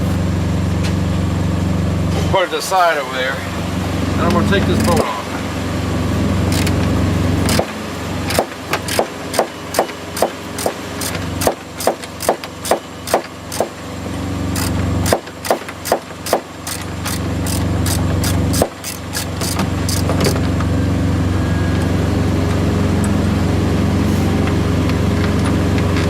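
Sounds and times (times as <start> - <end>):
engine idling: 0.0 - 26.0
ratchet wrench clicking: 6.5 - 6.8, 7.4 - 7.7, 8.3 - 13.7, 14.5 - 20.4.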